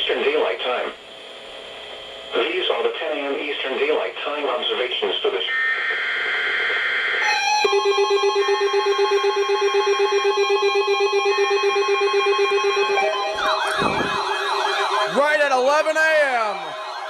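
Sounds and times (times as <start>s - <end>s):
pulsing electronic alarm tone: 7.2s - 17.0s
wavering siren: 7.2s - 17.0s
buzzing data burst: 12.0s - 17.0s.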